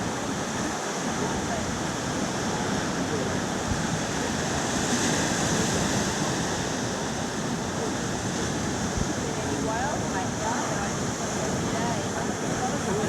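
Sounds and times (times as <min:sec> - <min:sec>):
ocean waves washing: 0:00.0 - 0:13.0.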